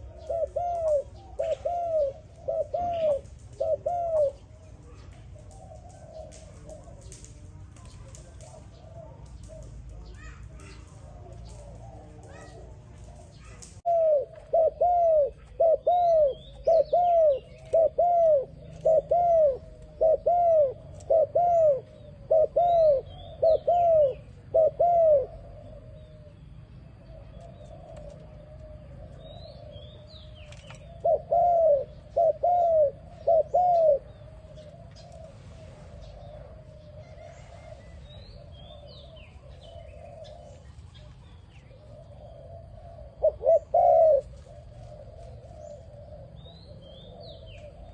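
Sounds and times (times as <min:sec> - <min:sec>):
dove cooing: 0:00.0 - 0:47.9
small birds chirping: 0:00.0 - 0:47.9.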